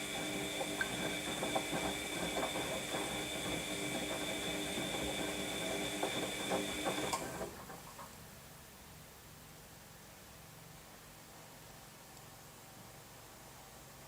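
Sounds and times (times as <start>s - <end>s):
washing machine motor whining: 0.0s - 7.7s
washing machine knocking: 0.0s - 8.0s.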